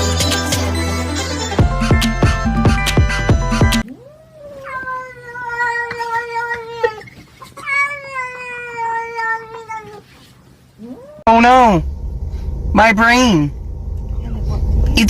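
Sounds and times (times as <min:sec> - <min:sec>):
cat yowling: 0:03.8 - 0:10.1, 0:10.8 - 0:11.3.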